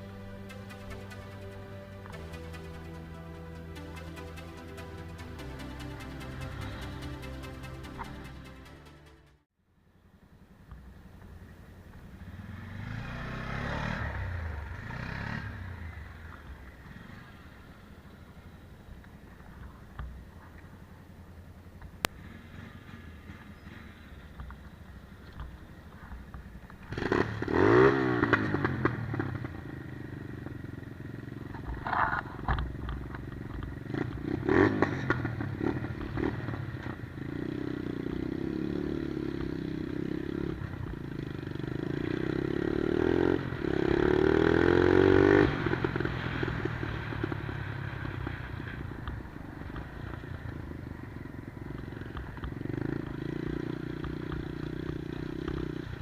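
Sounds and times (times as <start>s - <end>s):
minibike engine revving: 12.0s - 18.6s, 22.1s - 25.6s, 26.8s - 56.0s.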